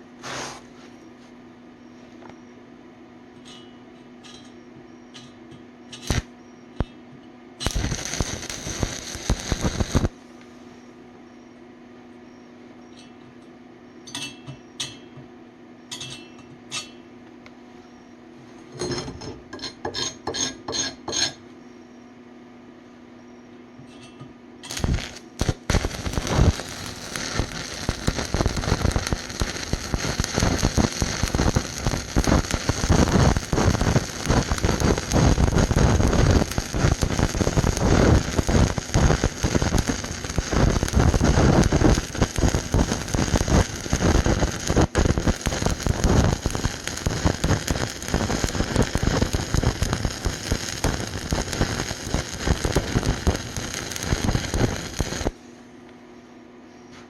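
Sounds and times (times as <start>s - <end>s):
welding arc crackling: 5.9s - 6.9s, 7.6s - 10.2s, 24.6s - 55.4s.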